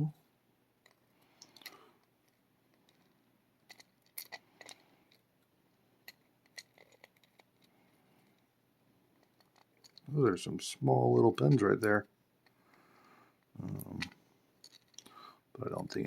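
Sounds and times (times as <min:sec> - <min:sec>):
tiny lock pins clicking: 0:00.8 - 0:05.2, 0:06.0 - 0:08.4, 0:09.2 - 0:10.1, 0:13.6 - 0:15.1.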